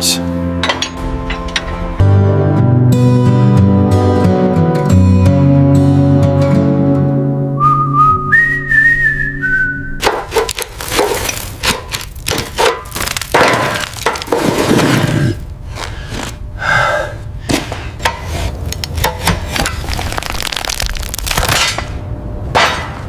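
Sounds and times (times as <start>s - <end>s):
hand tools knocking and clanking: 0.6s - 1.8s
rough scraping: 10.0s - 16.4s.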